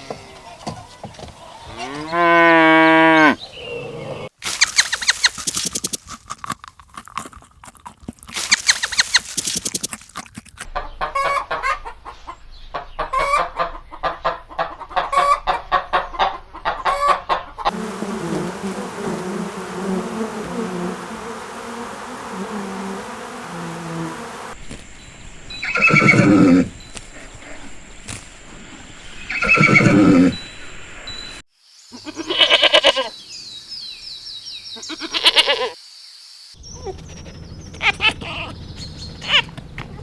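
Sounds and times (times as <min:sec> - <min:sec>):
chickens clucking: 0:10.7 - 0:18.6.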